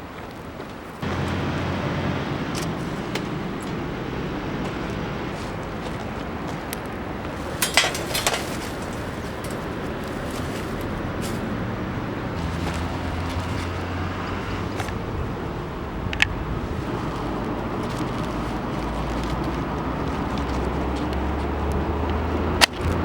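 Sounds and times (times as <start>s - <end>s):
car engine and road noise: 0.0s - 23.0s
clicks and knocks: 7.4s - 11.5s.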